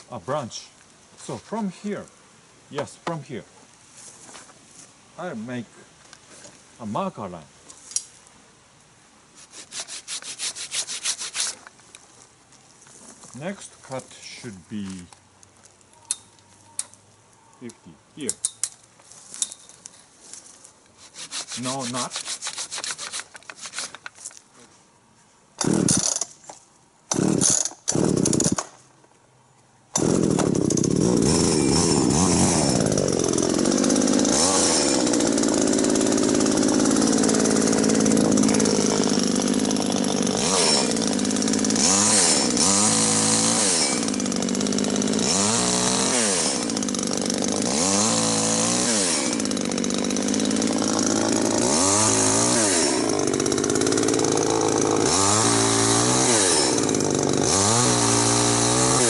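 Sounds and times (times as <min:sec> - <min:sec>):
chainsaw engine running: 0:25.6 - 0:26.2, 0:27.1 - 0:28.6, 0:30.0 - 0:59.0.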